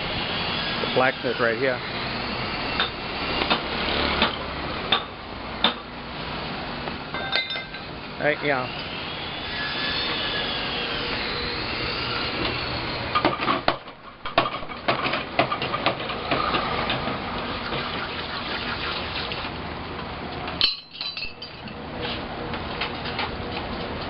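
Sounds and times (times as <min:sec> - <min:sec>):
steady noisy background: 0:00.0 - 0:24.0
metal clinks and knocks: 0:07.1 - 0:07.9, 0:20.6 - 0:21.8.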